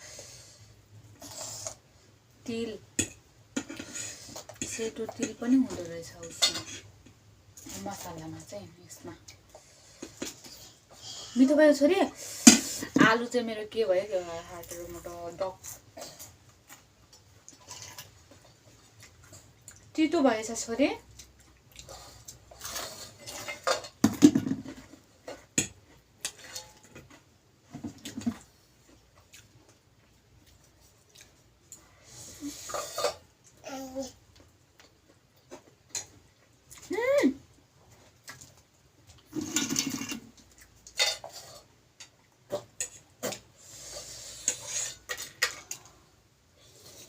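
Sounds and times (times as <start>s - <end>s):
utensils clinking against a dish: 6.1s - 6.9s, 39.3s - 43.4s.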